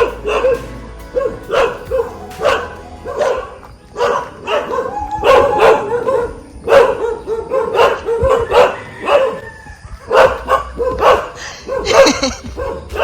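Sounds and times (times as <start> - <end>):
dogs barking: 0.0 - 13.0.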